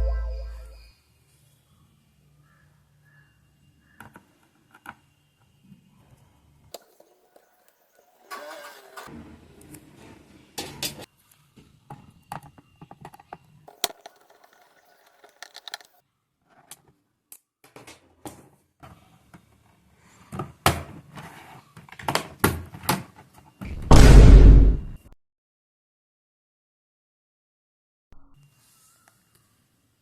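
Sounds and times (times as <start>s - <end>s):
heavy thump: 23.7s - 25.0s.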